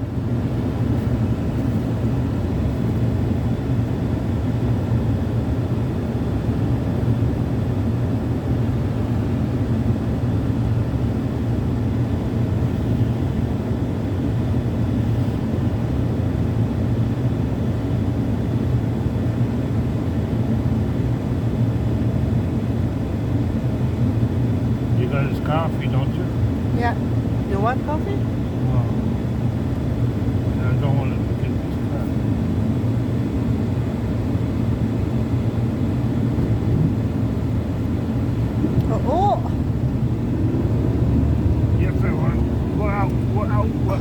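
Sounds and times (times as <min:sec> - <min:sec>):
truck engine running: 0:24.0 - 0:44.0.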